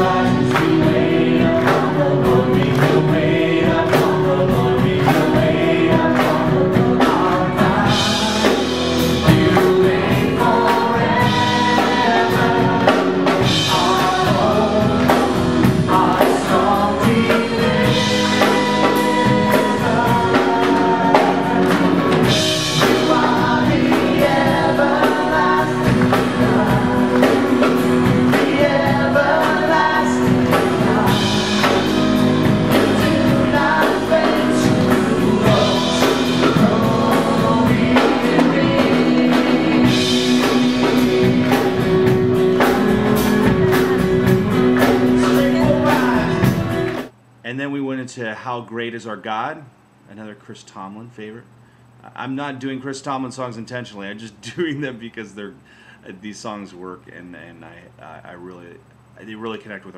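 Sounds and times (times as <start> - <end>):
people singing together: 0.0 - 47.1
band with drum kit: 0.0 - 47.4.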